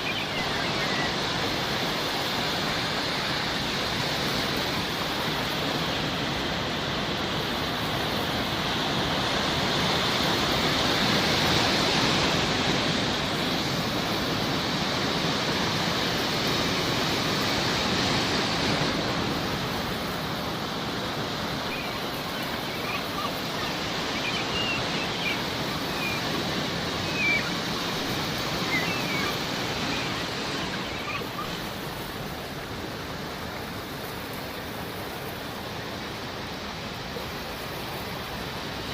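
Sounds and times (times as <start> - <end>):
seagull calls: 0.0 - 1.7, 21.5 - 32.0
sea waves washing in: 0.0 - 38.9.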